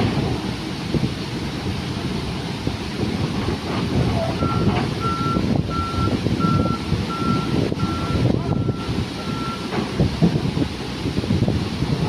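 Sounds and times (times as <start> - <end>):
reversing alarm beeping: 4.4 - 9.8.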